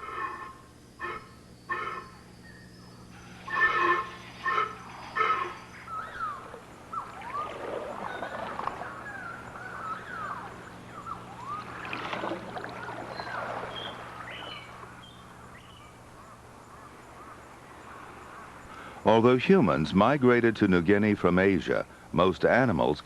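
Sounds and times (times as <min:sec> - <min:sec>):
animals squawking and chirping: 0:00.0 - 0:12.0.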